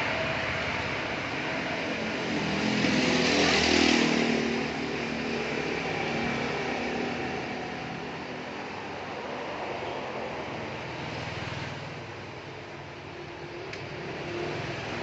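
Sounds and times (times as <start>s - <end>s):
vehicle engine passing by: 0.0s - 8.3s
traffic hum: 0.0s - 15.0s.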